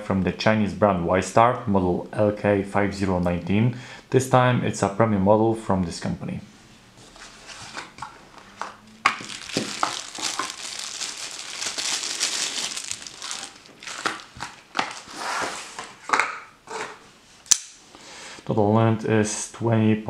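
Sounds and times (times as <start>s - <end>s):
wrapping crinkling and rustling: 7.0s - 16.0s.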